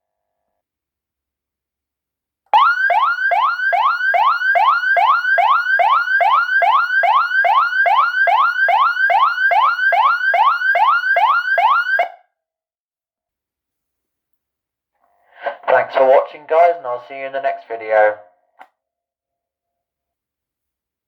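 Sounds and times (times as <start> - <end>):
rapid electronic siren: 2.6 - 12.2.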